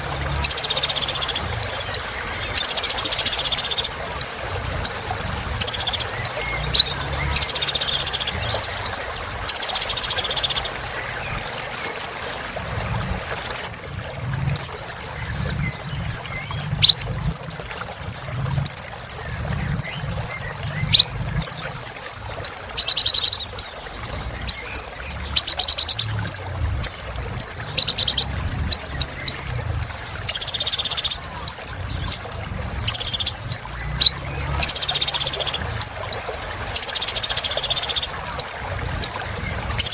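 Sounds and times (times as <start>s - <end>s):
sunbird singing: 0.0s - 5.0s, 5.6s - 12.6s, 13.2s - 39.9s.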